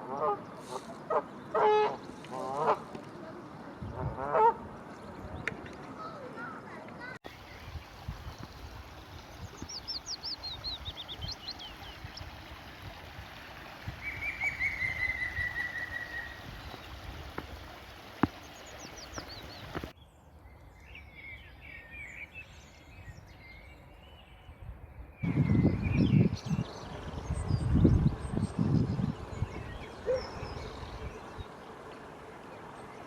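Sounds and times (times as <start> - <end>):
songbirds singing: 7.3 - 33.0
low steady background rumble: 25.6 - 33.0.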